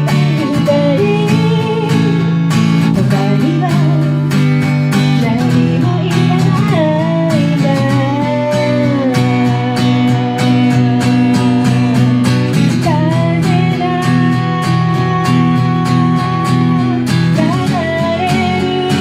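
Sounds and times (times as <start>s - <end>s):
acoustic guitar strumming chords: 0.0s - 19.0s.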